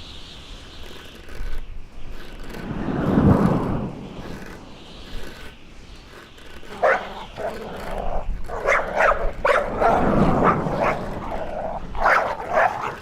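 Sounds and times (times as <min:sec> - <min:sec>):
dog barking and yipping: 0:06.7 - 0:13.0.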